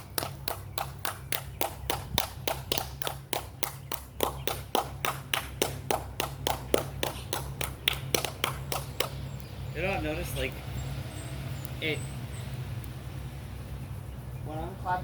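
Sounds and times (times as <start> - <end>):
hands clapping with echo: 0.0 - 9.4.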